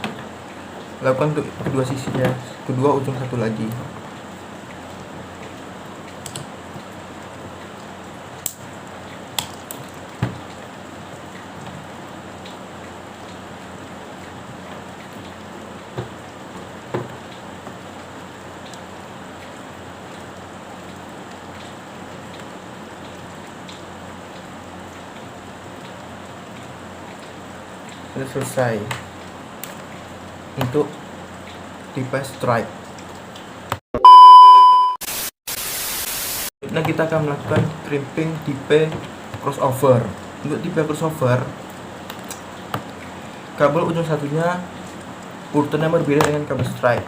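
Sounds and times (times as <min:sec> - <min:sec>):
rain-like hiss: 0:00.0 - 0:33.6, 0:35.1 - 0:47.0
steady hiss: 0:35.1 - 0:36.5.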